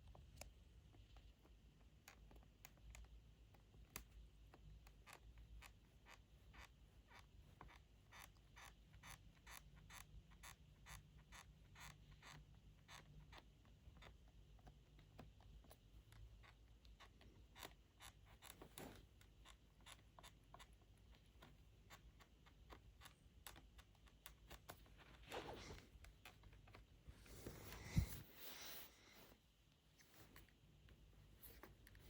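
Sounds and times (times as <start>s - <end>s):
small clicks and ticks: 0.0s - 25.1s.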